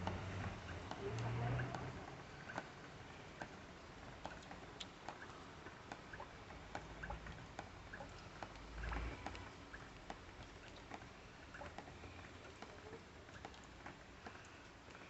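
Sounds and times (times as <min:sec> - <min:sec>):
water dripping: 0:00.0 - 0:15.0.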